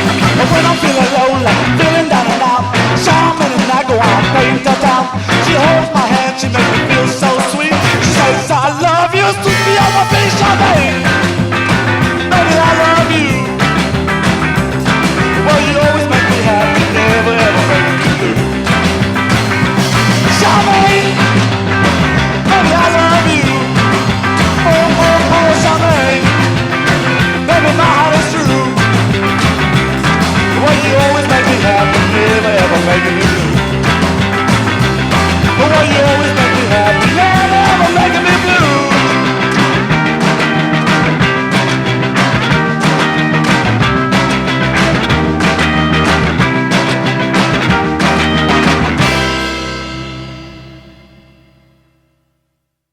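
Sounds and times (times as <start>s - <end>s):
person singing: 0.0s - 11.4s, 12.0s - 14.0s, 15.2s - 18.7s, 19.9s - 29.5s, 30.3s - 40.0s
rock band playing: 0.0s - 52.0s.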